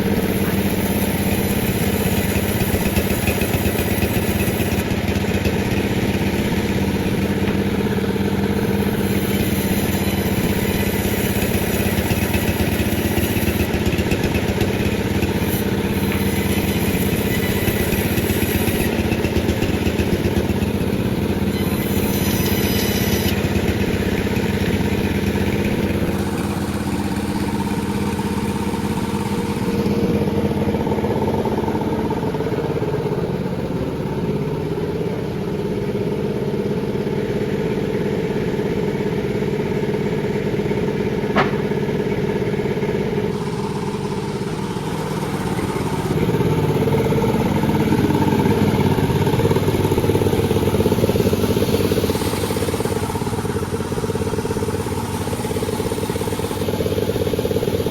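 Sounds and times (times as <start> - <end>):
chainsaw sawing a log: 0.0 - 31.6, 41.3 - 42.3, 43.2 - 57.9
sharp click: 41.3 - 41.8.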